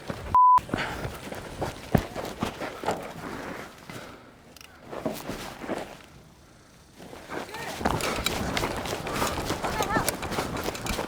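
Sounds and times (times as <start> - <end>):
footsteps on dirt: 0.0 - 4.1, 7.0 - 11.0
gear rustling: 0.8 - 11.0.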